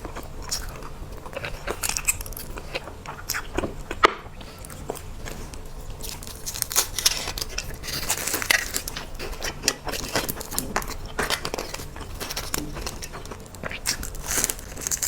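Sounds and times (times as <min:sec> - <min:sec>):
plastic wrapping crinkling: 0:04.6 - 0:15.0.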